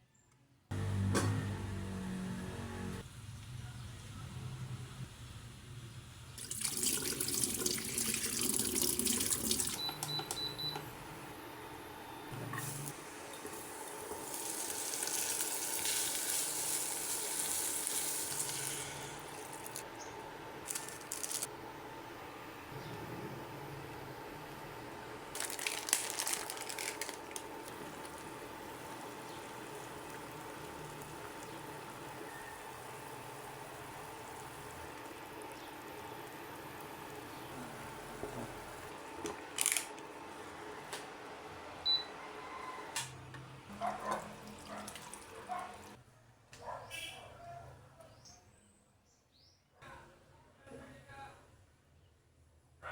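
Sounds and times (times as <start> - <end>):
food sizzling in hot oil: 13.5 - 19.8.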